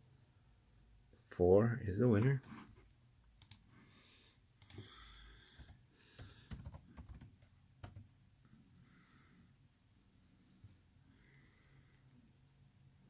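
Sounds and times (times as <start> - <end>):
keyboard and mouse clicks: 3.4 - 3.6, 4.6 - 4.9, 5.5 - 8.1.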